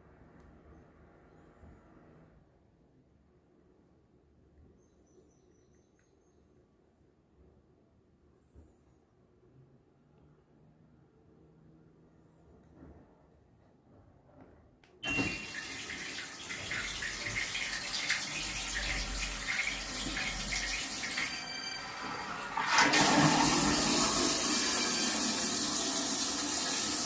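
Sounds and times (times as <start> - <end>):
toilet water rushing: 15.0 - 27.0.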